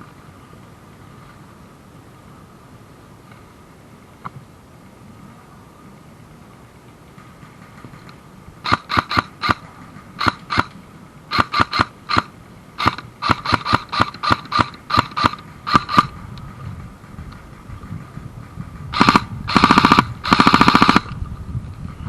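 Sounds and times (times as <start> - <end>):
airsoft gun firing bursts: 8.6 - 10.7, 11.3 - 16.2, 18.9 - 21.1.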